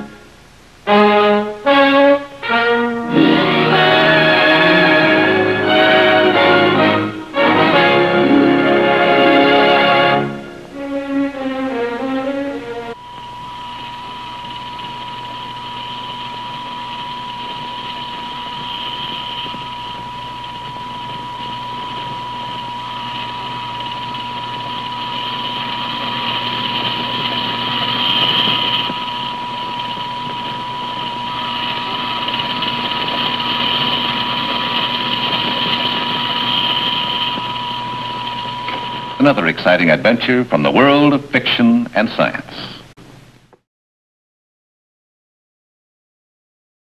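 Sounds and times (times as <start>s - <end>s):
orchestral music: 0.9s - 13.0s
floor-cleaning machine humming: 2.4s - 12.0s, 12.6s - 40.0s.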